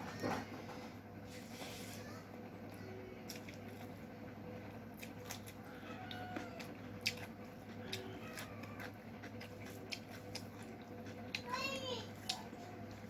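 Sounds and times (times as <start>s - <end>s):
steady low hum: 0.0s - 13.0s
wet mouth eating sounds: 3.2s - 4.1s, 4.8s - 11.5s.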